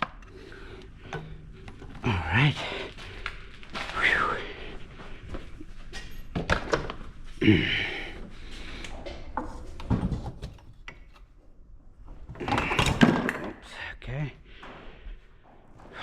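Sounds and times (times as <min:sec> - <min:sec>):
knocks and clunks of tools: 0:09.1 - 0:11.3, 0:12.3 - 0:13.6.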